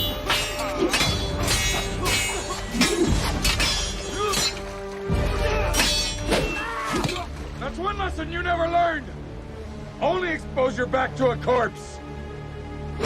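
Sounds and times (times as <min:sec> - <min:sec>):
steel swords clashing: 0:00.0 - 0:07.3
orchestral film score: 0:00.0 - 0:13.0.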